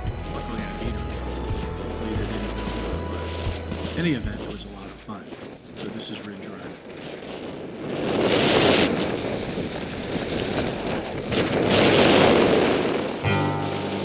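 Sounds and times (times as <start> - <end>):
music: 0.0 - 4.5, 13.2 - 14.0
wind buffeting microphone: 0.0 - 14.0
skis running over snow: 2.0 - 14.0.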